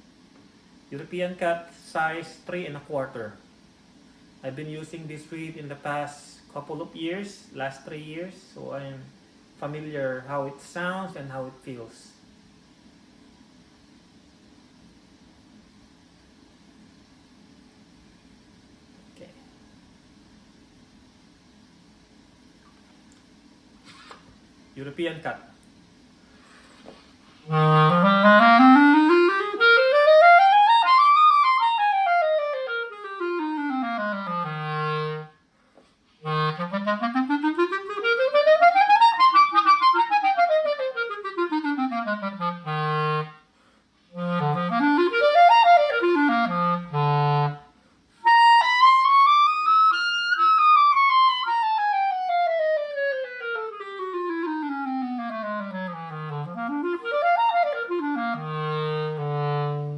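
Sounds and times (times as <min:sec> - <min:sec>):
clarinet playing scale runs: 0:27.4 - 0:35.4, 0:36.2 - 0:43.4, 0:44.1 - 0:59.9.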